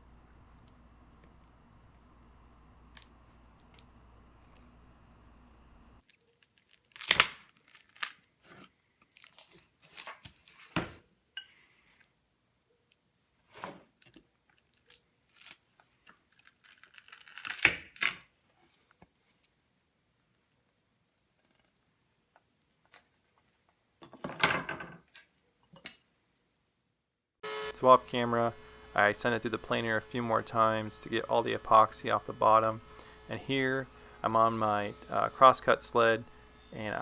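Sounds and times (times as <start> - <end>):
mold cracking and tearing off: 6.1 - 8.4, 9.1 - 10.4, 16.2 - 18.3.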